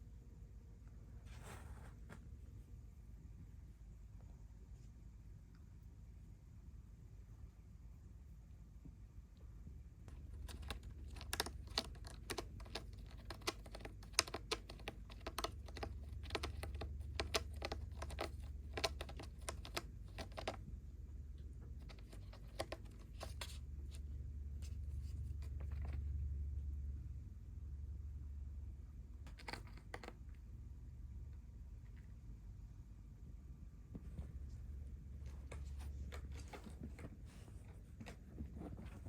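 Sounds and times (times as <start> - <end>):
kitten purring: 10.1 - 20.6
small rapid clicks and scratches: 10.1 - 20.6, 21.6 - 26.2, 29.2 - 30.4, 35.2 - 39.0.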